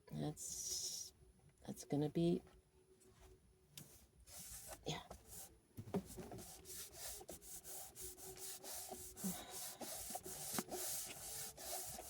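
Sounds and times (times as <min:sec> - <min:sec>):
hands rubbing and scraping board: 0:04.3 - 0:12.0.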